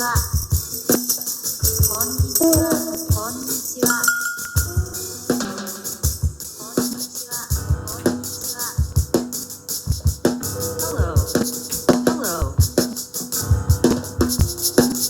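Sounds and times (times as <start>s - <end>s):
shaker-like rattle: 0.0s - 6.0s
low drum hits: 4.6s - 6.4s.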